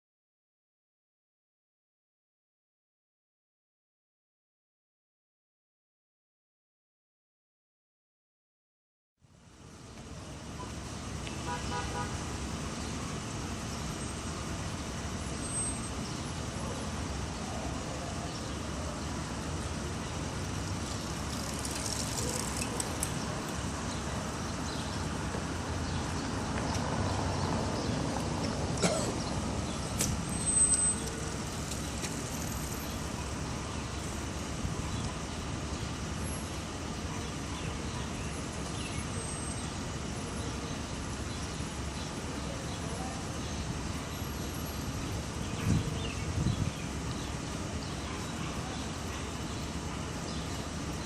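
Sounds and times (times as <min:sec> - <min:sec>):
city traffic noise: 0:09.2 - 0:51.0
vehicle passing: 0:25.1 - 0:32.1.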